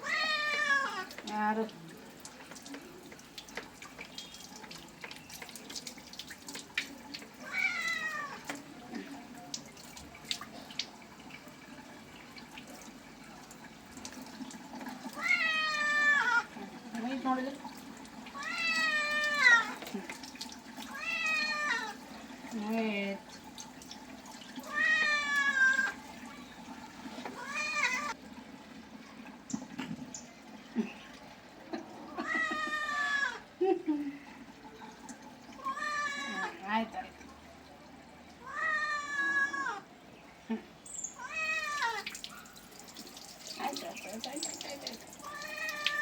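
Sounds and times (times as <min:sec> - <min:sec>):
cat meowing: 0:00.0 - 0:01.1, 0:07.4 - 0:08.5, 0:15.2 - 0:16.5, 0:18.4 - 0:19.8, 0:20.9 - 0:22.0, 0:24.7 - 0:26.0, 0:27.4 - 0:28.2, 0:32.2 - 0:33.4, 0:35.6 - 0:36.6, 0:38.4 - 0:39.8, 0:41.2 - 0:42.0
water dripping: 0:00.0 - 0:46.0
water trickling: 0:00.0 - 0:46.0.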